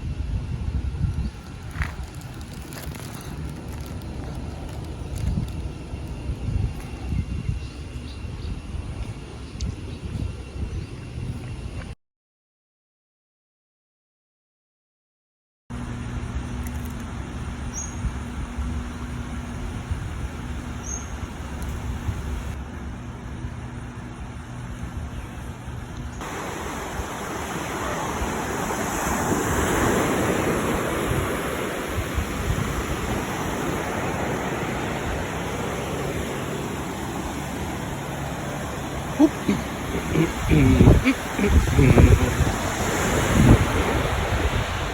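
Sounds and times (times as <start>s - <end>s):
broad rushing noise: 26.2s - 44.9s.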